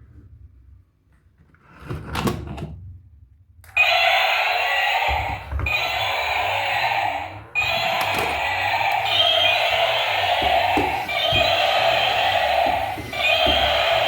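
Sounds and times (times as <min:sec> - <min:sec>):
electronic toy sound effect: 0:03.8 - 0:14.0.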